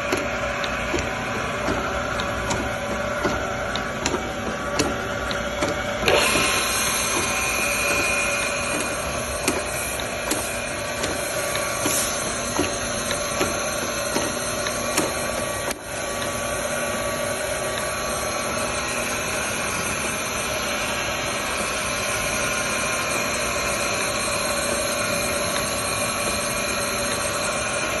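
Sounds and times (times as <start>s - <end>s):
surface grinder hiss and hum: 6.0s - 28.0s.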